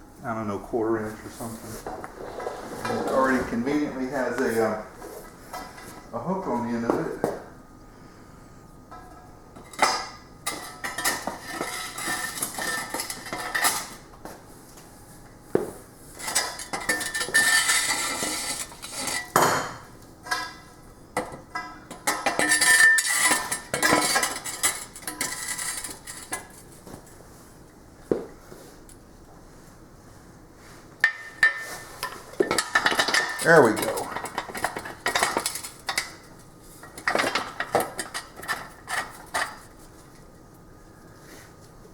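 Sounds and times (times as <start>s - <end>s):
metal scraping and clanking: 10.4s - 14.0s, 16.2s - 19.5s, 21.9s - 26.7s.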